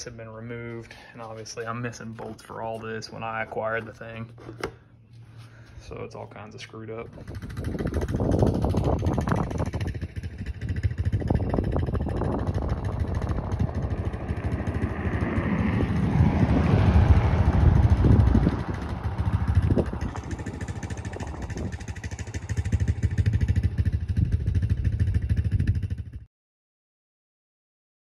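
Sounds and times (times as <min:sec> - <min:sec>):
atv engine running: 0:07.0 - 0:26.2.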